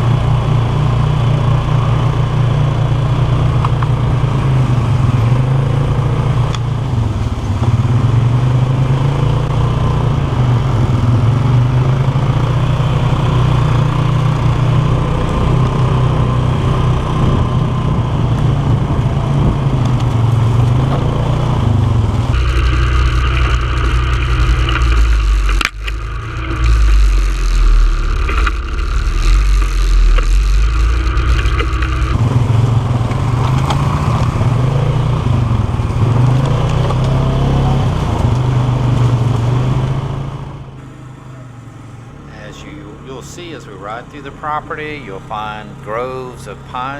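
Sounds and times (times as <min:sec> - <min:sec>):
atv engine running: 0:00.0 - 0:46.9.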